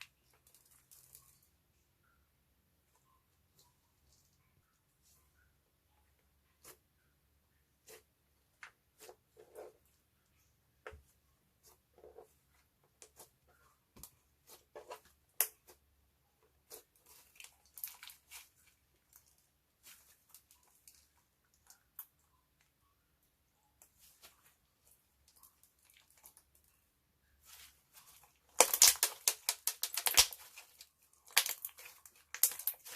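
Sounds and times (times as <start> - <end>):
slime squishing by hand: 10.8 - 22.1, 27.4 - 32.9.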